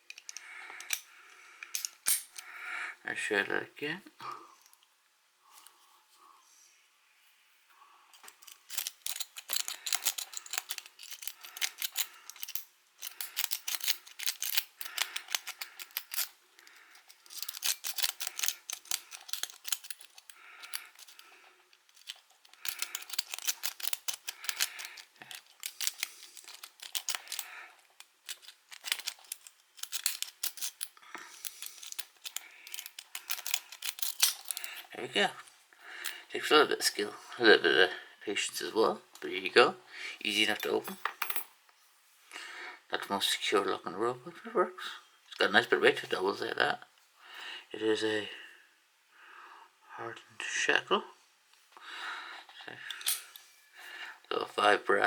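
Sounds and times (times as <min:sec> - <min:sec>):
lock pick scraping and clicking: 0:00.0 - 0:02.5, 0:08.2 - 0:34.9.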